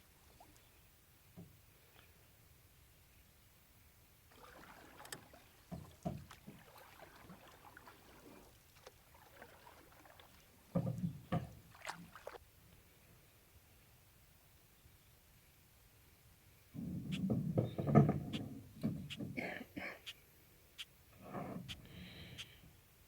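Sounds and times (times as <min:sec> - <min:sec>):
soft water sloshing: 0:00.0 - 0:02.3, 0:04.1 - 0:13.0
hollow knocks of canoe and paddle: 0:04.3 - 0:12.4, 0:16.8 - 0:19.6.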